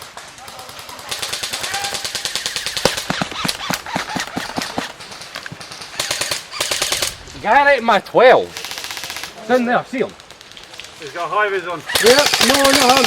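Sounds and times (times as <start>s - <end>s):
airsoft guns firing bursts: 0.5s - 7.5s, 8.5s - 9.5s, 11.9s - 13.0s.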